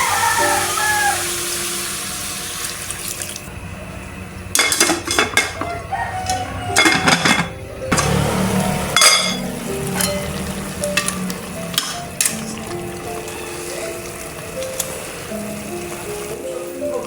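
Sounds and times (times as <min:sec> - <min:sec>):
pan sizzling: 0:00.0 - 0:03.4, 0:06.8 - 0:17.0
dishes and utensils clinking: 0:04.5 - 0:08.2, 0:08.9 - 0:15.3.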